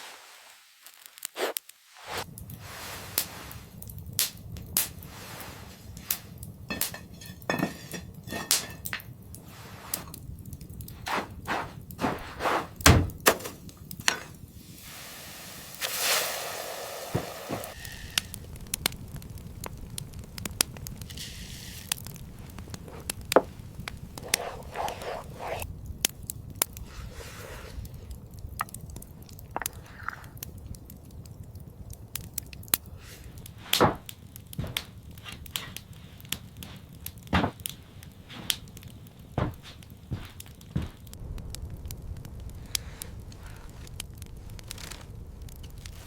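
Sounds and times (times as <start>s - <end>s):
sharp knocks and thuds: 11.1s - 13.6s, 33.8s - 35.0s, 37.3s - 37.7s, 39.4s - 41.1s
heavy thud: 12.0s - 13.6s.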